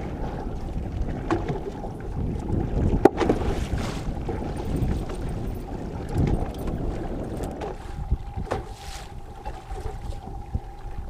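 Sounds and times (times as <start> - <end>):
wind rumbling on microphone: 0.0 - 11.0
knocks on boat: 2.9 - 3.9, 6.1 - 8.8.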